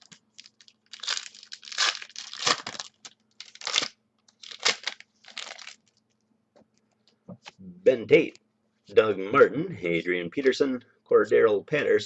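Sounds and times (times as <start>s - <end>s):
foil wrapper tearing and crinkling: 0.0s - 6.0s.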